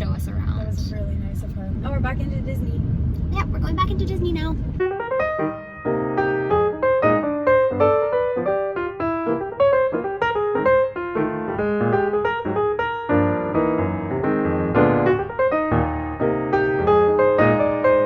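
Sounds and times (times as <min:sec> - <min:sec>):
piano background music: 0:04.8 - 0:18.0.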